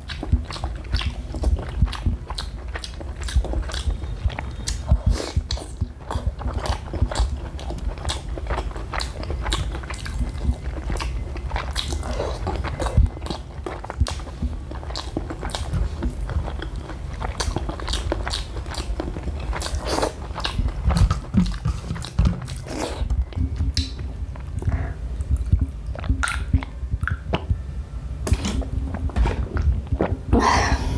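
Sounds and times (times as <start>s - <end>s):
person chewing crunchy food: 0.0s - 27.6s.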